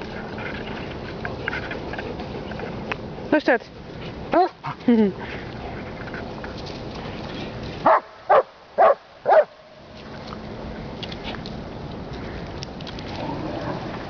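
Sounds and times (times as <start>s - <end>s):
dog barking: 7.8s - 9.5s.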